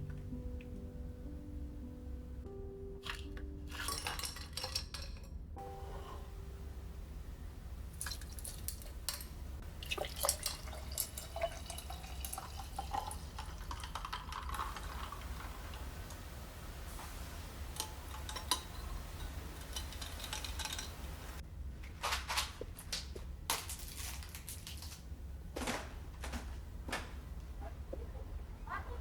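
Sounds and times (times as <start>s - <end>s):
liquid pouring into glass: 9.8s - 16.0s.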